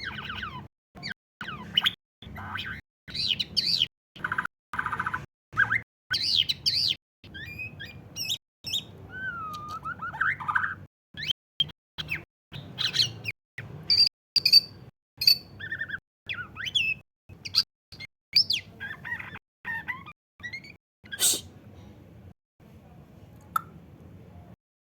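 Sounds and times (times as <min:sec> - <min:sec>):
songbird whistling and chattering: 0:00.0 - 0:11.3, 0:13.9 - 0:21.4.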